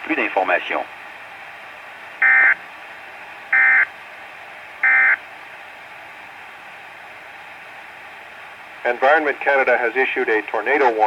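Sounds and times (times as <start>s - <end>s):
electronic data tone chirps: 2.2s - 2.6s, 3.6s - 3.9s, 4.8s - 5.2s
radio hiss: 8.8s - 11.0s.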